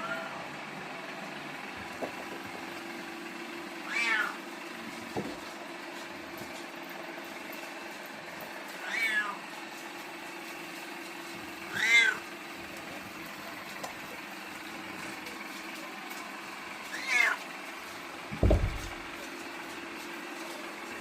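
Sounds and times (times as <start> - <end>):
kitten meowing: 3.9 - 4.4, 8.8 - 9.4, 11.7 - 12.2, 16.9 - 17.4
low thump: 18.4 - 19.0.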